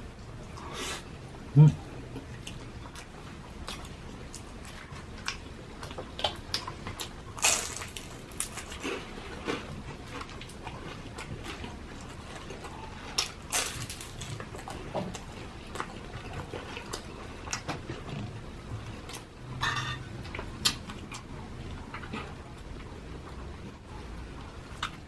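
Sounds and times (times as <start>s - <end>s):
chewing and crunching food: 0.0s - 25.0s.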